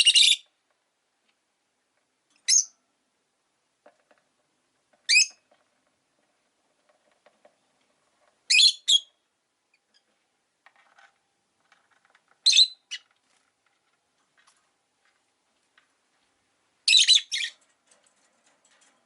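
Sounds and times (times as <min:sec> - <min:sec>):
lovebirds chirping shrilly: 0:05.1 - 0:05.3, 0:16.9 - 0:17.6
soft bird chatter: 0:16.9 - 0:18.5.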